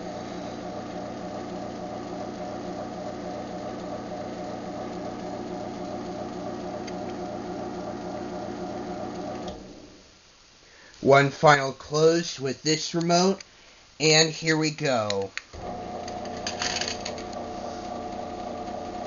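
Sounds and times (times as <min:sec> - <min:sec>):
garage door opener motor hum: 0:00.0 - 0:10.0, 0:15.5 - 0:19.0.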